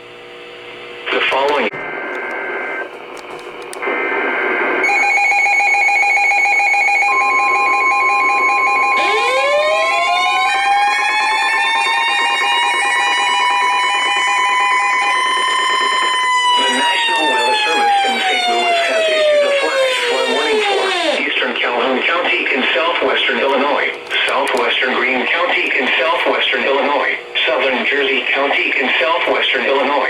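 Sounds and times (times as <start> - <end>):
steady warning tone: 3.8 - 30.0
alternating electronic alarm: 3.9 - 23.6
warning siren winding up: 4.8 - 21.2.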